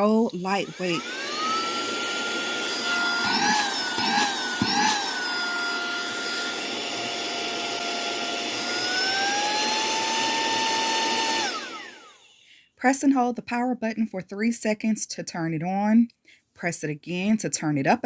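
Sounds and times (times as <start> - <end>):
handheld vacuum motor whine: 0.0 - 12.4.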